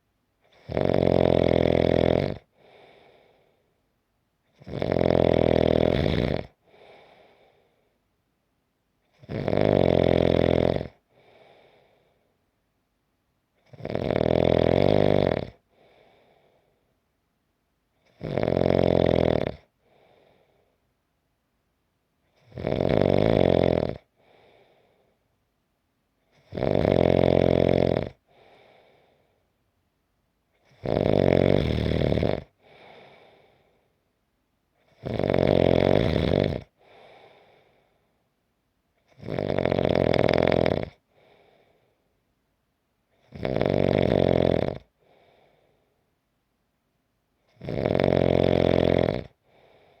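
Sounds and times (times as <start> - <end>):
person snoring: 0.5 - 3.5, 4.5 - 7.7, 9.1 - 12.1, 13.6 - 16.6, 18.1 - 20.6, 22.4 - 25.1, 26.3 - 29.2, 30.6 - 33.8, 34.8 - 37.8, 39.0 - 41.8, 43.2 - 45.5, 47.5 - 50.0
faint short breath: 28.3 - 29.5, 32.6 - 34.0, 36.8 - 38.2, 41.1 - 42.1, 45.0 - 46.0, 49.4 - 50.0.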